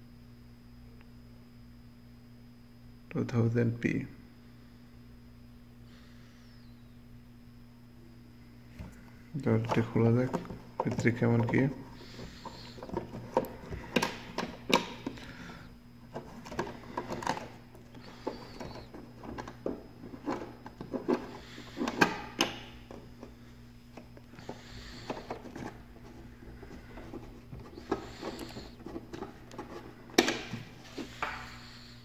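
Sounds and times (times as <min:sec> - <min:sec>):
faint low hum: 0:00.0 - 0:32.0
plastic housing clicks and knocks: 0:12.4 - 0:15.2.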